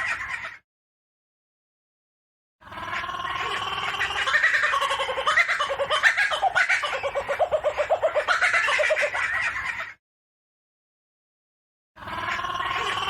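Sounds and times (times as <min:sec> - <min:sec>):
kookaburra laughing call: 0:02.8 - 0:10.0.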